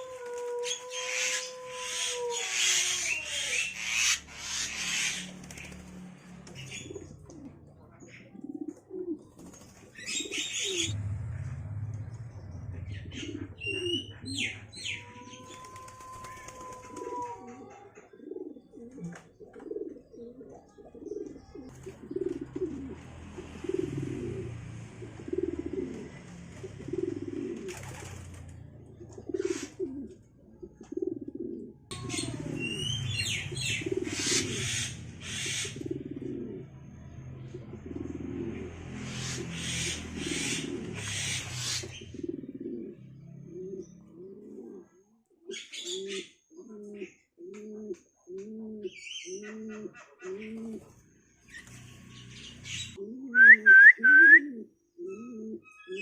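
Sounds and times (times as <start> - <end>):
pigeons cooing: 0.0 - 56.0
birds chirping and whistling: 0.7 - 5.9, 9.7 - 11.0, 11.9 - 17.5, 31.9 - 35.8, 39.0 - 42.9, 48.9 - 49.6, 51.4 - 53.7, 54.8 - 56.0.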